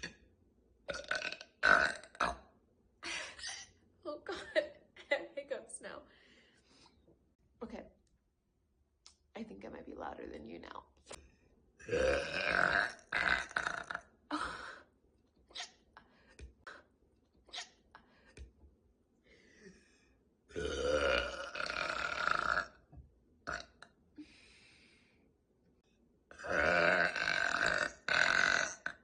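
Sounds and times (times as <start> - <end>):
woman burping: 0.0 - 0.2, 0.9 - 2.5, 11.8 - 14.8, 20.5 - 22.8, 26.3 - 29.0.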